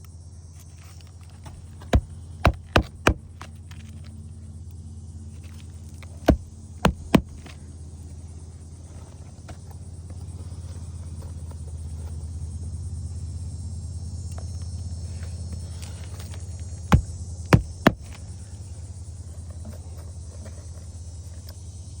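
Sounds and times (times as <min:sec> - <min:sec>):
steady low hum: 0:00.0 - 0:22.0
hammer nailing knocks: 0:01.6 - 0:03.4, 0:06.2 - 0:07.5, 0:16.9 - 0:18.2.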